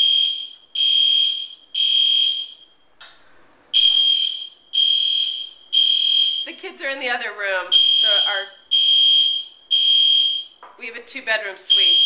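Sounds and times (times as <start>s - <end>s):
smoke alarm beeping: 0.0s - 2.9s, 3.7s - 6.7s, 7.7s - 10.6s, 11.7s - 12.0s.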